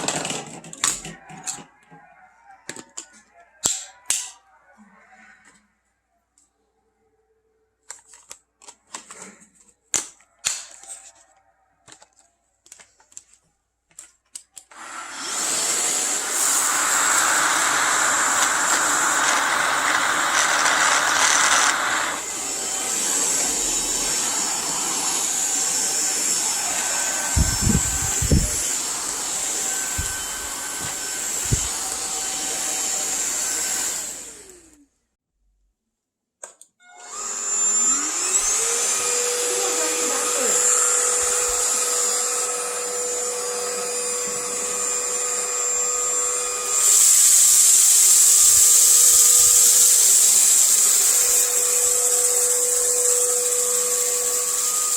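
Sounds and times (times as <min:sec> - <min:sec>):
stick vacuum cleaner motor whine: 0:14.7 - 0:34.8, 0:36.9 - 0:54.9.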